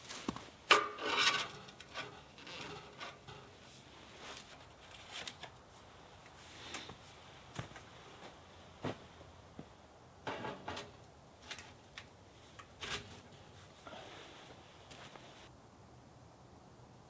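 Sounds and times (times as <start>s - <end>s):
objects knocking and rustling: 10.2s - 12.0s.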